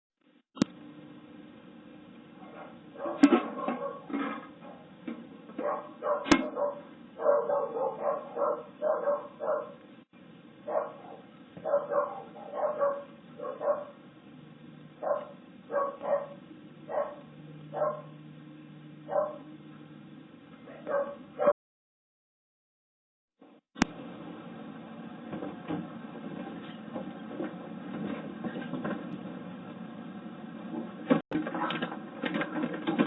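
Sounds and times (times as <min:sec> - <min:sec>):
dog barking: 0:02.4 - 0:04.9, 0:05.6 - 0:09.8, 0:10.6 - 0:14.0, 0:15.0 - 0:18.2, 0:19.1 - 0:19.5, 0:20.6 - 0:21.6.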